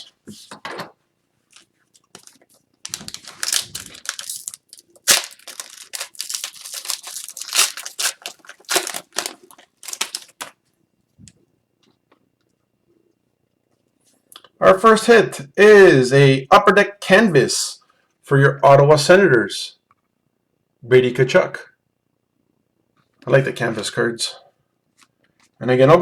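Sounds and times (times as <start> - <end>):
wrapper tearing and crinkling: 1.5 - 10.6.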